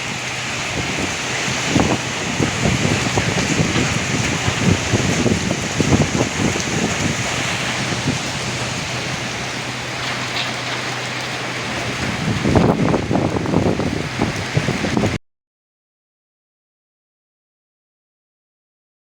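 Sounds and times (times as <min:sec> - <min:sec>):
heavy rain pouring: 0:00.0 - 0:15.2
strong wind gusts: 0:00.0 - 0:15.2.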